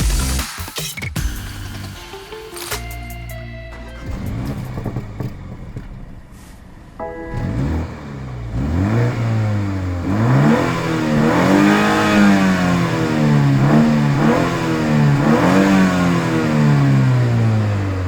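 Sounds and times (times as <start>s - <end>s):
car engine revving: 3.7s - 18.0s.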